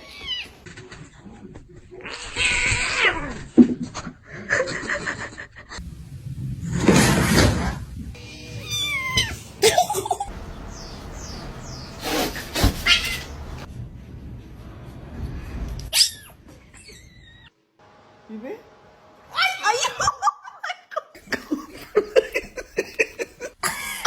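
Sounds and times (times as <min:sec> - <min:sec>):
cats meowing: 0:00.0 - 0:00.6, 0:02.0 - 0:03.4, 0:08.2 - 0:09.6, 0:11.2 - 0:13.7
noisy animal sounds: 0:10.3 - 0:13.7.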